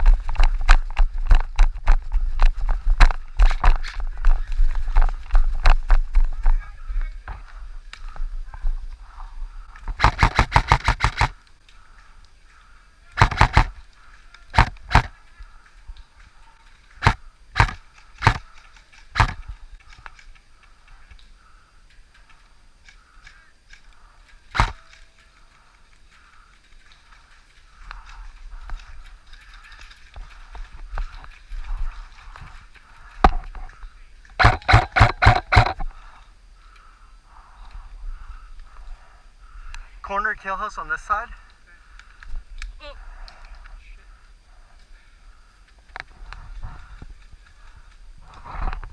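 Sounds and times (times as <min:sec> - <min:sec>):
footsteps: 0:00.0 - 0:11.7, 0:13.2 - 0:35.9
airsoft rifle shots: 0:10.0 - 0:11.4, 0:13.2 - 0:13.8, 0:14.5 - 0:15.1, 0:17.0 - 0:18.4, 0:19.1 - 0:19.4, 0:24.6 - 0:24.8, 0:34.4 - 0:35.8.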